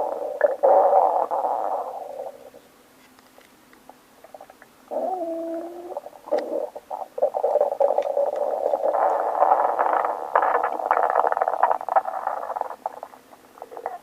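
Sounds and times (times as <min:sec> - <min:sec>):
stomach gurgling: 0:00.0 - 0:02.6, 0:04.2 - 0:14.0.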